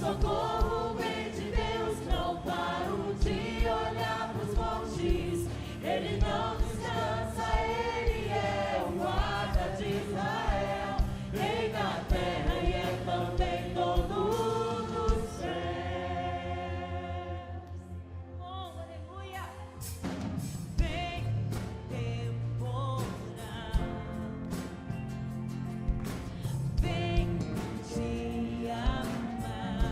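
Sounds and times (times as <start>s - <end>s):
drums beating: 0.0s - 15.7s, 19.9s - 22.2s, 25.9s - 29.9s
choir singing with band: 0.0s - 18.1s, 19.4s - 22.0s, 26.2s - 29.9s.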